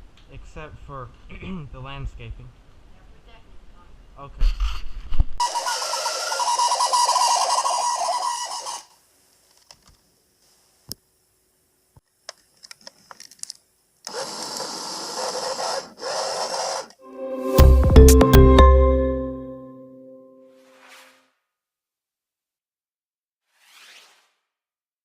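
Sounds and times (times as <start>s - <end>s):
toy car motor whirring: 5.4s - 9.0s, 14.1s - 17.0s.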